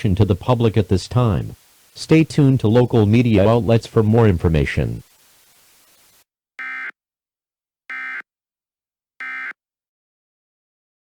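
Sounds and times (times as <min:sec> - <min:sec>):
faint hiss: 0:00.0 - 0:06.2.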